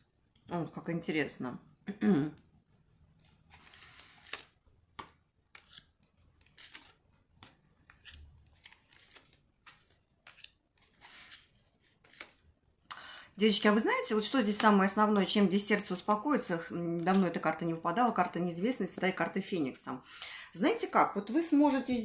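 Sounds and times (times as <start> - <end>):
cards rustling and snapping: 2.6 - 12.5.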